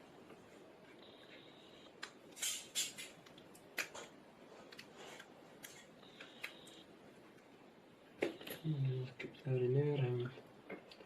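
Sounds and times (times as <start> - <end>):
small tools clicking and scraping: 2.4 - 3.2.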